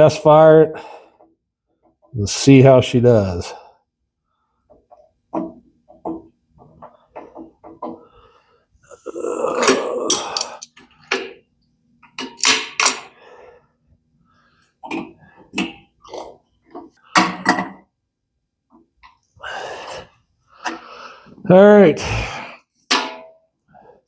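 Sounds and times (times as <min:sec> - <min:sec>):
hand tools and metal fittings clinking: 0:09.6 - 0:11.4, 0:12.0 - 0:13.2.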